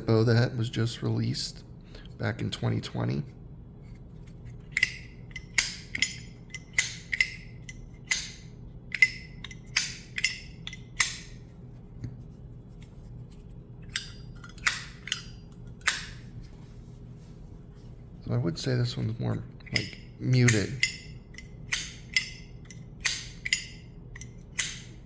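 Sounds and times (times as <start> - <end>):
lighter lid clicking: 4.8 - 11.3, 13.9 - 16.2, 19.8 - 25.0.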